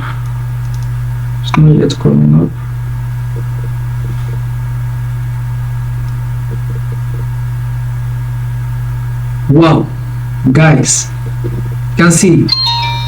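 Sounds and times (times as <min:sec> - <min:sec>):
low electrical hum: 0:00.0 - 0:13.0
faint high steady tones: 0:12.0 - 0:13.0.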